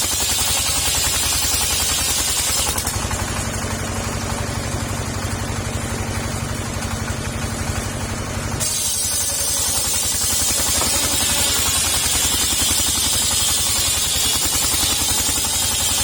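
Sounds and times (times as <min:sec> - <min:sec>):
petrol engine driving circular saw: 0:00.0 - 0:16.0
saw blade hissing through wood: 0:08.6 - 0:16.0.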